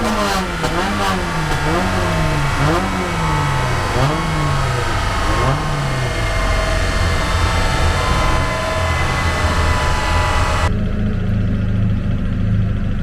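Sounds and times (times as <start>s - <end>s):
car engine revving: 0.0s - 11.0s.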